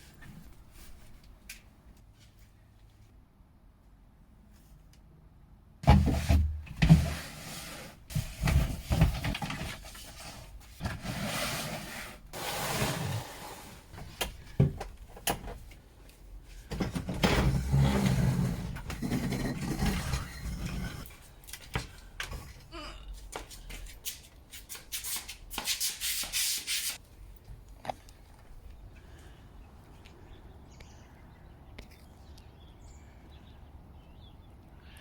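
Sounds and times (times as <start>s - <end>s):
objects knocking and scraping: 5.8s - 14.9s, 16.6s - 21.1s.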